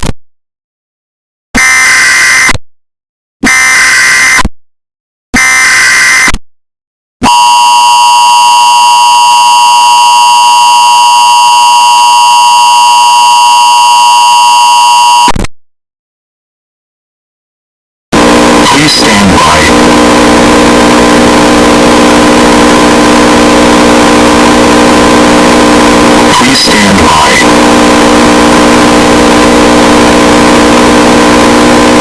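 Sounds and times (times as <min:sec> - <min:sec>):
screechy data bursts: 0:01.6 - 0:02.6, 0:03.4 - 0:04.4, 0:05.4 - 0:06.3
harsh two-tone attention signal: 0:07.3 - 0:15.4.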